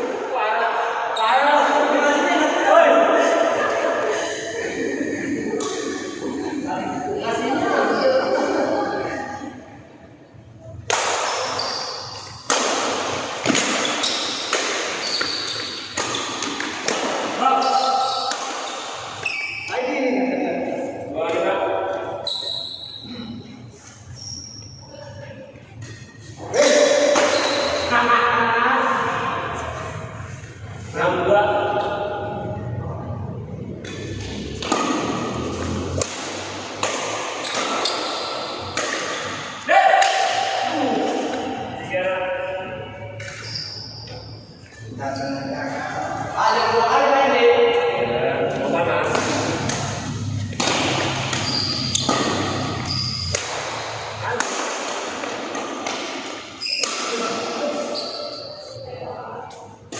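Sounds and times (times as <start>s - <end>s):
badminton rackets hitting shuttlecock: 10.8s - 19.4s, 33.8s - 41.6s, 49.0s - 58.3s.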